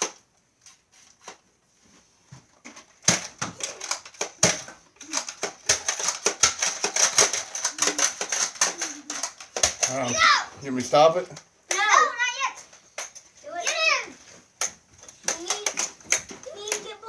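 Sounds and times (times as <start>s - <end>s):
toy dart blasters firing: 3.1s - 10.2s.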